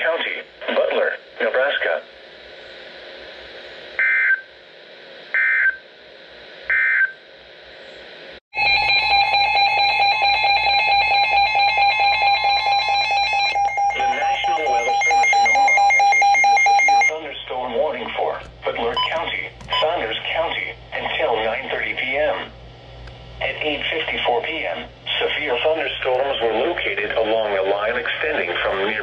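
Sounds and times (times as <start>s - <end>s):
continuous alert tone: 8.6s - 17.2s, 18.7s - 20.0s
digital data bursts: 10.3s - 17.3s.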